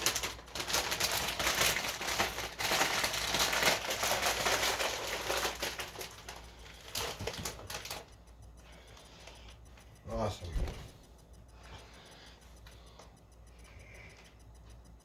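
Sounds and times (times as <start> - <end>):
potato chips crunching: 0.0 - 6.3.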